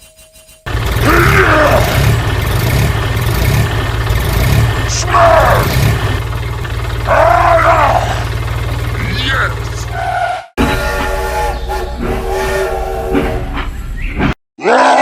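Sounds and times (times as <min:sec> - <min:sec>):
loud low engine rumble: 0:00.7 - 0:12.5
drawn-out rising and falling calls: 0:00.7 - 0:14.0.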